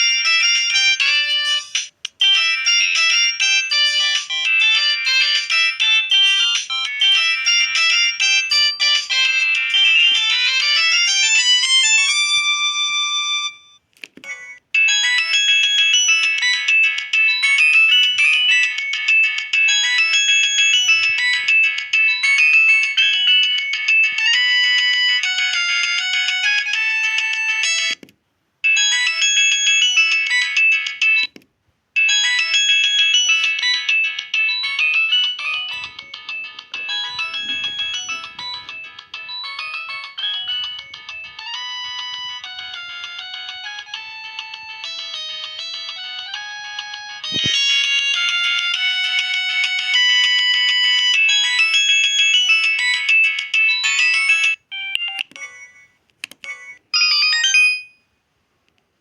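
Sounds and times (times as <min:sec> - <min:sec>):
polyphonic phone ringtones: 0:00.0 - 0:28.0, 0:28.6 - 0:31.4, 0:32.0 - 0:58.2.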